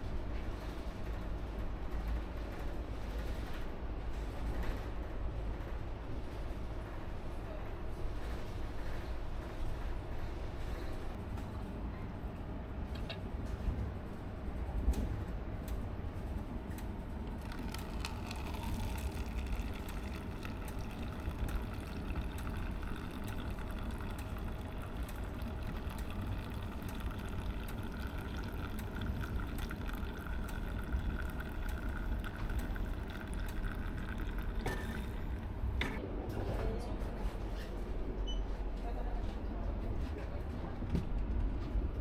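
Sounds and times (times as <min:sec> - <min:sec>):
liquid filling a cup: 0:17.2 - 0:36.0.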